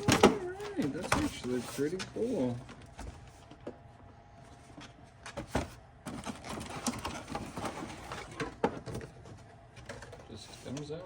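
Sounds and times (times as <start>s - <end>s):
packaging rustling and scraping: 5.4s - 10.8s.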